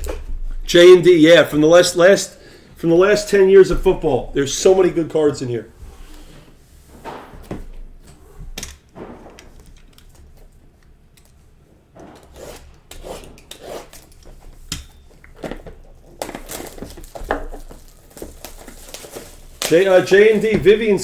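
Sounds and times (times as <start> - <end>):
cards and packs handled on table: 15.3 - 21.0.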